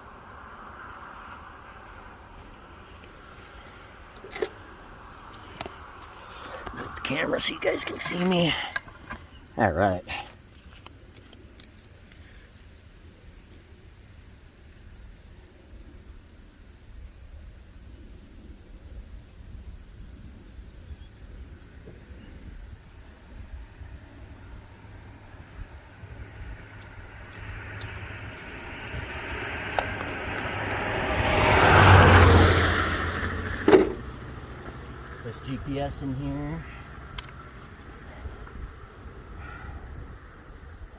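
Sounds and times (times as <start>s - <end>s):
car driving past: 0.0s - 8.3s, 24.1s - 39.3s
crickets chirring: 0.0s - 40.9s.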